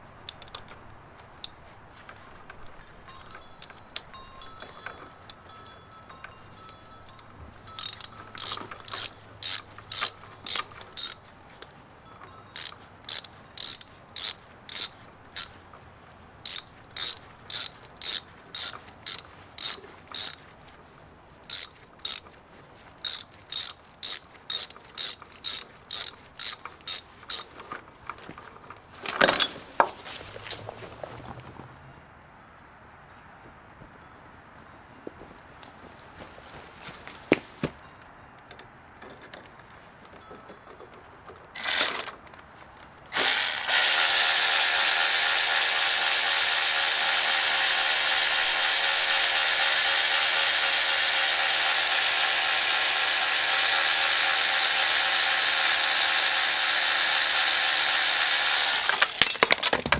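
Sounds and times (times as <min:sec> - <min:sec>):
ratchet wrench clicking: 0:07.1 - 0:11.3, 0:12.5 - 0:15.6, 0:16.4 - 0:20.5, 0:21.5 - 0:22.4, 0:23.0 - 0:27.5, 0:41.6 - 0:42.1, 0:43.2 - 0:59.5.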